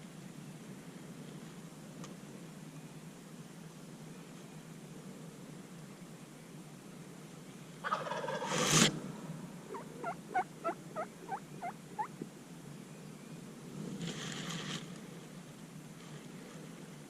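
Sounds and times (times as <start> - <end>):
turkey yelps: 7.8 - 8.5, 9.7 - 12.1
turkey gobbling: 7.8 - 8.6, 9.7 - 12.1.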